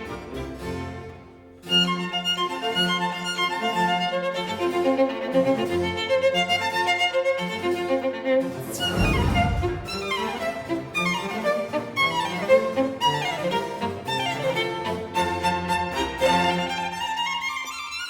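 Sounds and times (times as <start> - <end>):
violin music with fast string runs: 10.0 - 18.0.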